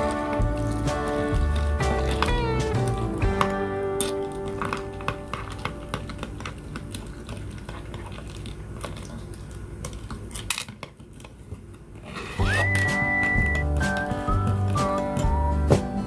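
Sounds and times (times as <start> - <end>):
background music: 0.0 - 5.7, 12.4 - 16.0
whistle-like gliding tone: 12.4 - 14.4.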